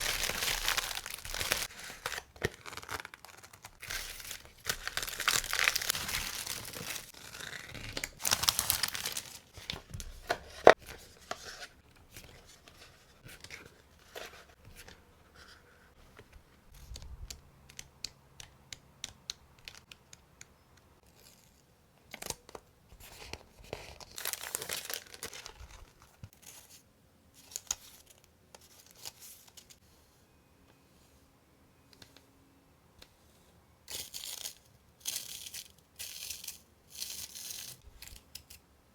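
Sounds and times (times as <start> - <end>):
packaging rustling and crinkling: 0.0 - 10.8, 23.2 - 26.3.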